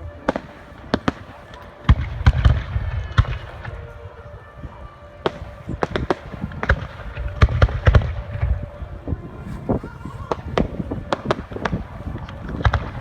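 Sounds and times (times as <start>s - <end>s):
fireworks cracking and booming: 0.0s - 13.0s.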